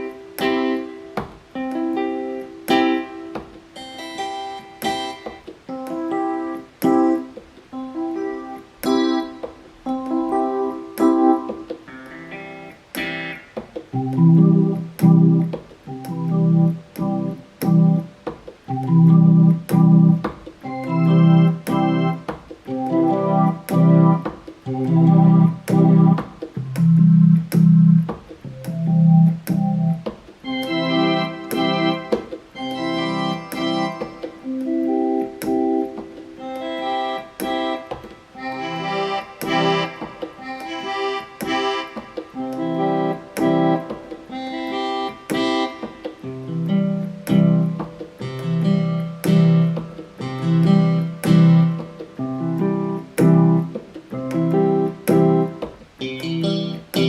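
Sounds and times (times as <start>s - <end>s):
keyboard notes in changing voices: 0.0s - 57.0s.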